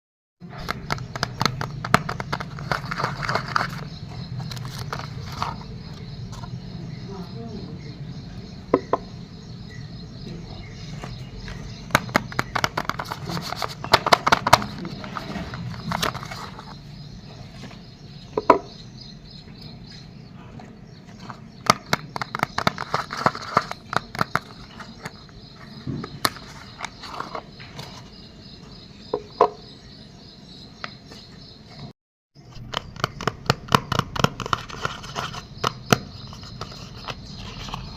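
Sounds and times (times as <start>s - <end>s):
crickets chirping: 0.7s - 31.6s
packaging crinkling and clicking: 12.0s - 16.8s, 21.6s - 25.3s.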